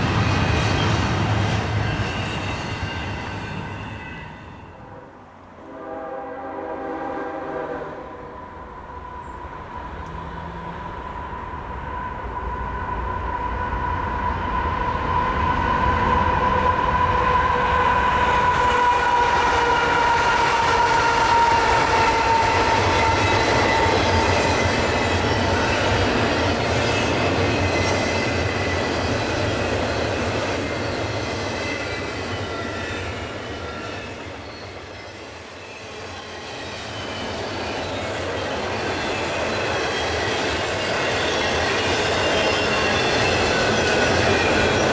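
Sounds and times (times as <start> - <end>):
rumble and clatter of train cars: 0.0 - 44.9
train horn note: 4.7 - 8.7.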